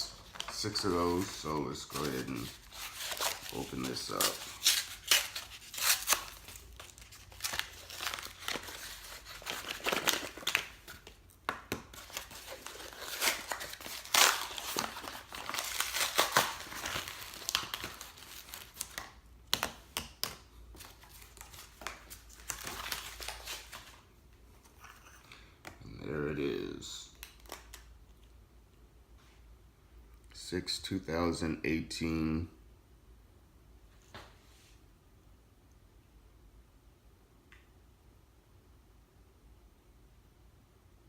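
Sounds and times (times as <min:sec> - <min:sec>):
packing material crinkling and tearing: 0:00.0 - 0:11.3, 0:11.9 - 0:24.0, 0:27.0 - 0:28.0.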